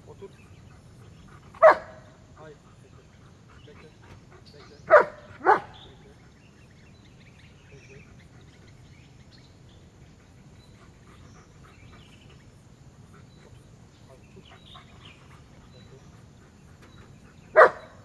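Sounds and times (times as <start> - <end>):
dog barking: 1.6 - 2.5, 4.8 - 6.0, 17.5 - 18.0.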